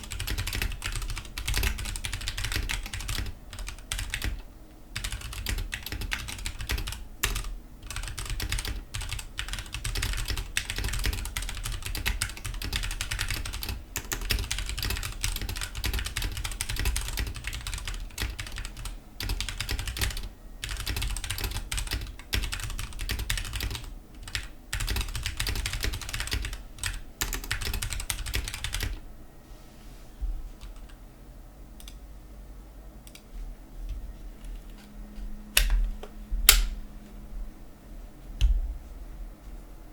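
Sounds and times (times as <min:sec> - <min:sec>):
fast typing on mechanical keyboard: 0:00.0 - 0:04.4, 0:05.0 - 0:29.0.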